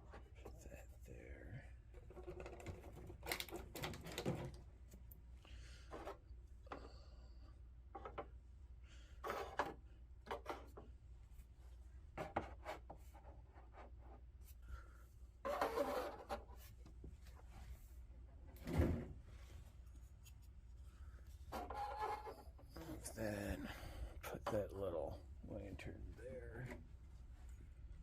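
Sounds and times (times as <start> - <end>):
plastic pieces clicking and rubbing: 2.2 - 4.3
plastic scraping rub: 15.4 - 16.6, 21.5 - 23.2.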